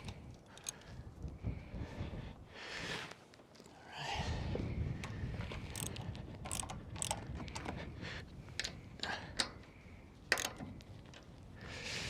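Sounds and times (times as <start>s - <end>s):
wind rumble on microphone: 0.0s - 3.0s, 3.8s - 12.0s
clicks and knocks on metal railing: 10.3s - 10.8s.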